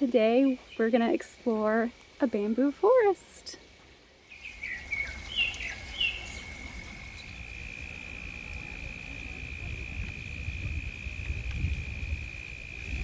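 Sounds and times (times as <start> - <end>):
bird chirping: 4.3 - 8.4
insect trilling: 4.3 - 13.0.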